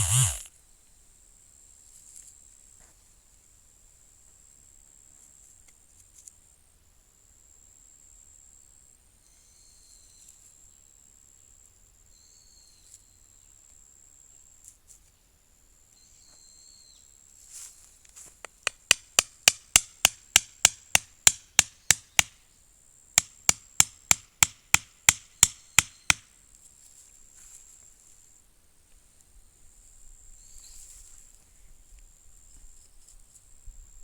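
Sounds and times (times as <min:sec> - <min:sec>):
tool striking wood: 0:00.0 - 0:00.4, 0:18.5 - 0:22.4, 0:23.2 - 0:26.3.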